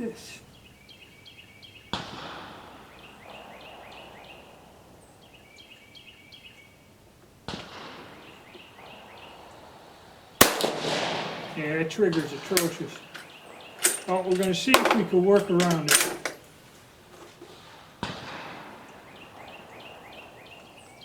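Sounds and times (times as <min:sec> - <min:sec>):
small birds chirping: 0:00.0 - 0:21.0
rifle shots with echo: 0:01.9 - 0:04.9, 0:07.4 - 0:16.5, 0:17.6 - 0:20.8.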